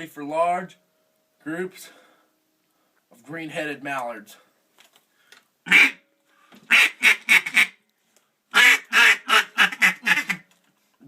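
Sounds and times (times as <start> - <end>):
duck call quacks: 5.7 - 6.0, 6.7 - 7.8, 8.5 - 10.4.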